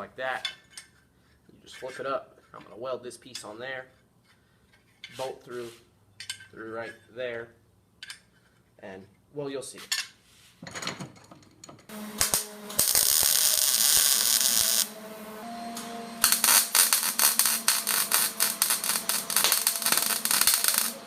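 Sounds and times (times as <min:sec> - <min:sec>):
welding arc hissing: 0:11.9 - 0:15.5, 0:16.2 - 0:21.0
welding arc crackling: 0:11.9 - 0:21.0.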